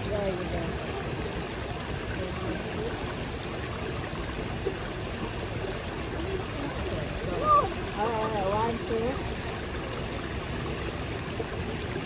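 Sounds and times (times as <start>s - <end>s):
faint distant voices: 5.4s - 10.8s.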